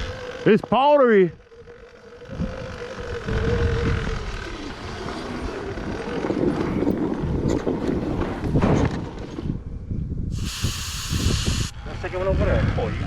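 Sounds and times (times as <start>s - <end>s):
electric motor whining: 0.0s - 7.6s
wind buffeting microphone: 0.0s - 13.0s.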